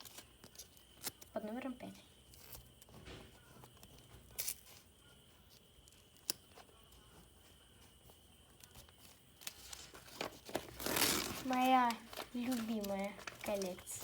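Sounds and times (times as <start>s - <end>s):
paper rustling: 6.5s - 14.0s.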